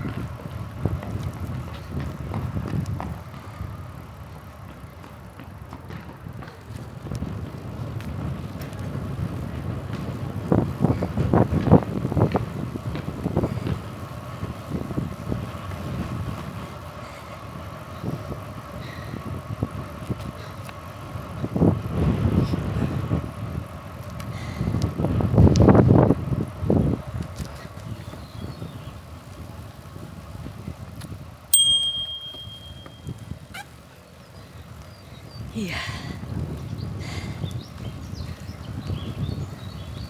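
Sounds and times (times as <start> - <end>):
wind buffeting microphone: 0.0 - 4.0, 5.9 - 31.4, 34.6 - 40.0
bicycle bell ding: 31.5 - 33.2.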